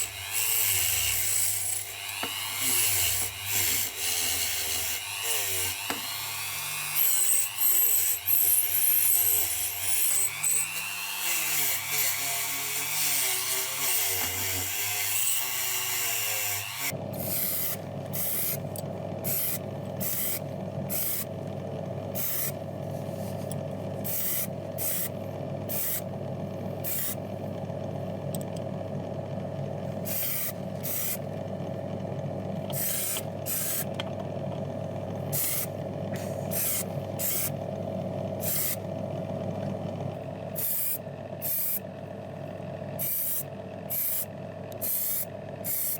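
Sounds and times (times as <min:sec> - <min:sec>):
power tool running: 0:00.0 - 0:18.6, 0:19.2 - 0:21.3, 0:30.0 - 0:31.3, 0:32.7 - 0:34.0, 0:35.2 - 0:37.6, 0:38.4 - 0:38.8
steady motor hum: 0:00.0 - 0:45.9.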